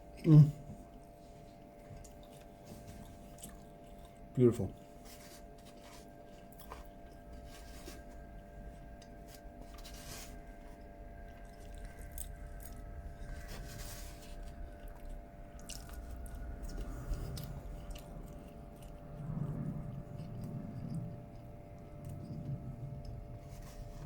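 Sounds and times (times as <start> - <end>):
chewing and crunching crispy food: 0.0 - 24.0
faint steady hum: 0.0 - 24.0.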